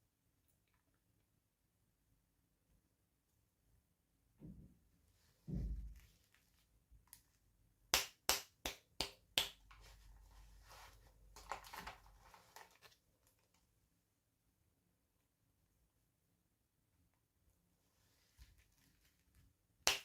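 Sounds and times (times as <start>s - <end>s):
packaging rustling: 11.4s - 13.6s.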